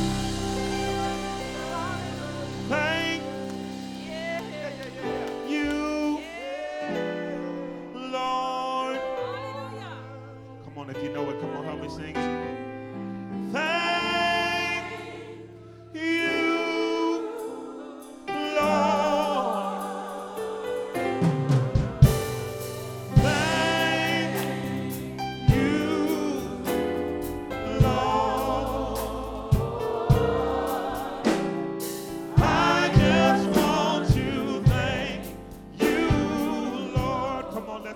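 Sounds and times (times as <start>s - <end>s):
drum hits: 0.0s - 6.1s, 21.2s - 26.9s, 27.7s - 37.6s
instrumental backing: 0.0s - 8.0s, 12.2s - 37.9s
gospel group singing: 0.0s - 37.9s.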